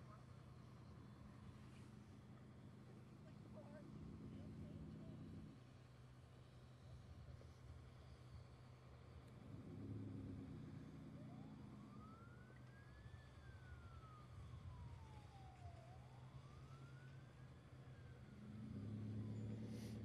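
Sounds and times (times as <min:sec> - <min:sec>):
faint siren wailing: 0:09.6 - 0:20.0.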